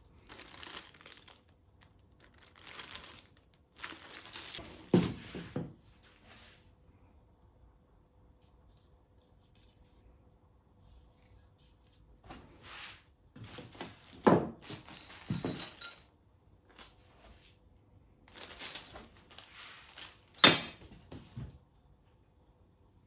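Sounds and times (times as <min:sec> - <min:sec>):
packaging rustling: 0:00.2 - 0:05.0
parts clinking: 0:13.4 - 0:16.1, 0:18.3 - 0:21.6.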